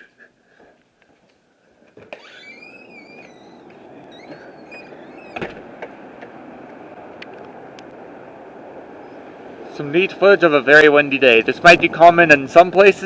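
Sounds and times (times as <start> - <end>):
high wavering squeaks: 2.2 - 5.6
wind noise: 2.2 - 13.0.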